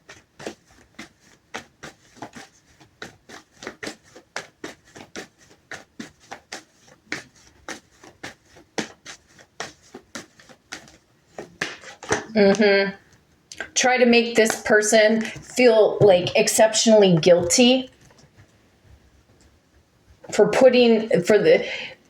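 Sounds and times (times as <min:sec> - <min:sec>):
cards being shuffled: 0:00.0 - 0:12.7.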